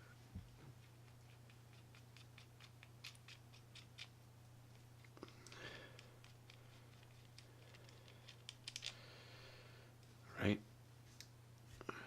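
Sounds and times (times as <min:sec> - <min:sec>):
small metal clicks: 0:07.3 - 0:09.0.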